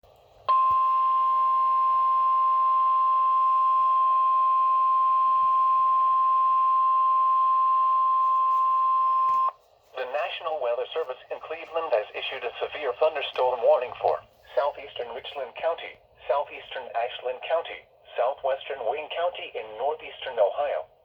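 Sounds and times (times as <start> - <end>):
loud steady alarm beep: 0.5 - 9.6.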